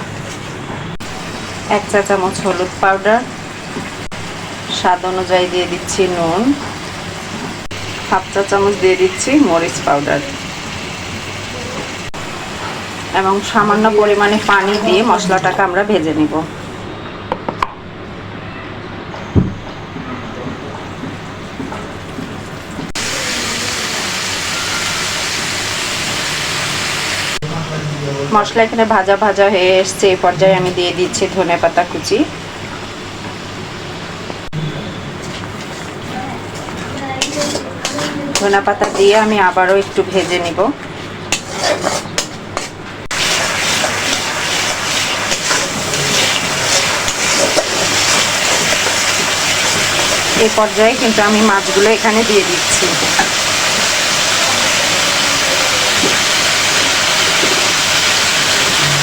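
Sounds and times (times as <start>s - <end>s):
spice paste sizzling in oil: 1.0s - 15.2s, 22.9s - 27.4s, 41.3s - 59.0s.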